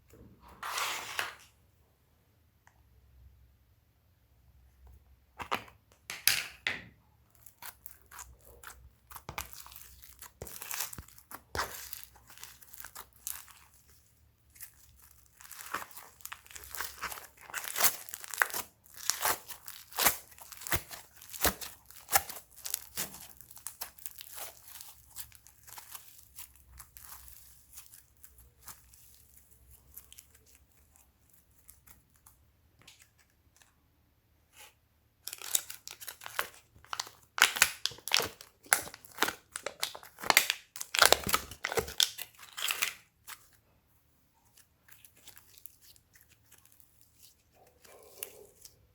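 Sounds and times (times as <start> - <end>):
slime squished by hand: 7.3 - 32.3.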